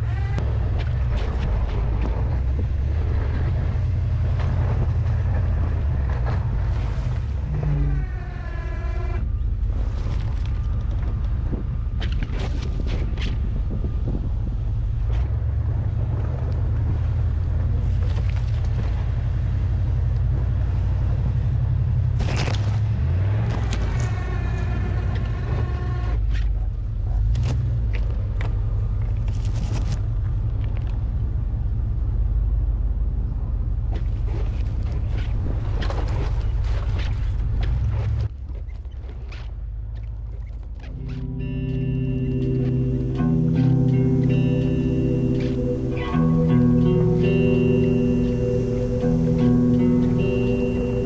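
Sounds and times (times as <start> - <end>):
truck engine rumble: 0.0 - 38.4, 39.6 - 51.0
short whine: 40.9 - 51.0.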